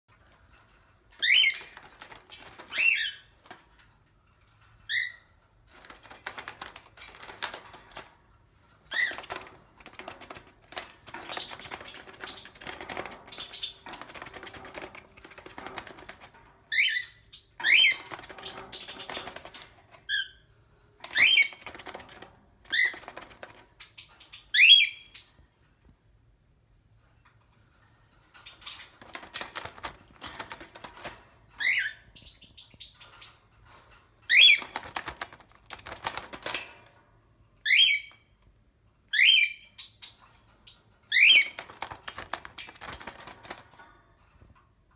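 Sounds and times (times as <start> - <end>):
rapid clicking and scratching: 1.2 - 3.8, 5.7 - 16.9, 17.6 - 20.2, 21.0 - 23.9, 28.4 - 31.4, 34.3 - 37.0, 41.2 - 43.9.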